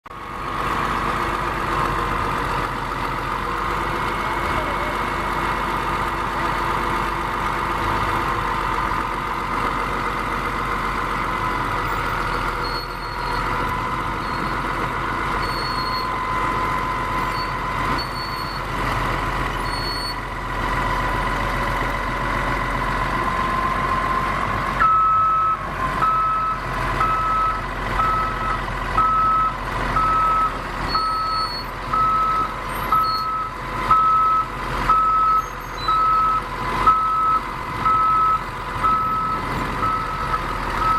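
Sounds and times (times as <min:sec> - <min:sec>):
bulldozer engine whining: 0:00.1 - 0:40.9
reversing alarm beeping: 0:15.4 - 0:18.7, 0:24.8 - 0:40.9.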